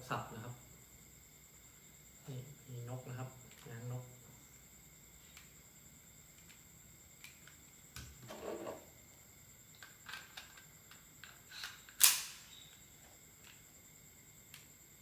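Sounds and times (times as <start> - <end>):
airsoft pistol crack: 12.0 - 12.6.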